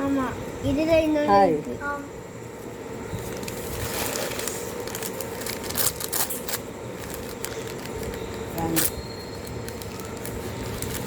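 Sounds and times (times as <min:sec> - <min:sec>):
paper wrapping crinkling: 0:03.2 - 0:11.0.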